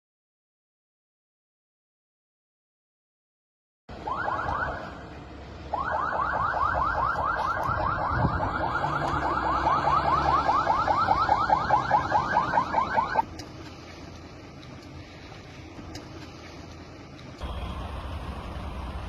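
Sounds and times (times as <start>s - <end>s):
electronic siren whooping: 4.0s - 5.0s, 5.7s - 13.2s.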